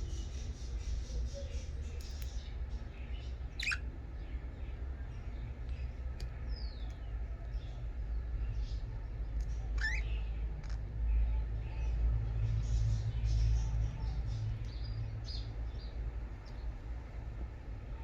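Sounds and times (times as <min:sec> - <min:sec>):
budgerigars chirping: 0:03.6 - 0:03.8, 0:09.5 - 0:10.3.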